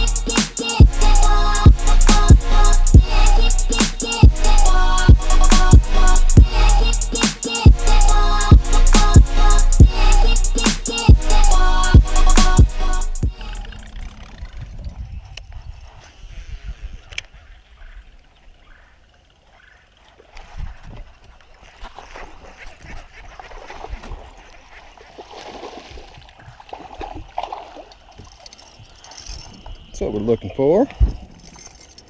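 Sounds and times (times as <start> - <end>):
steady low rumble: 0.0 - 15.0
water splashing and gurgling: 13.3 - 31.3.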